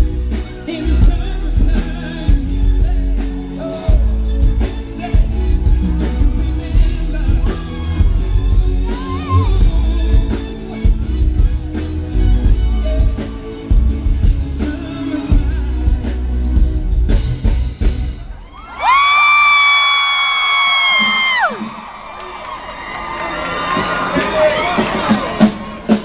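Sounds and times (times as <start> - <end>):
person singing: 0.0 - 16.9
heavy bass: 0.0 - 18.5
guitar: 0.0 - 18.9
drum beat: 0.0 - 19.1.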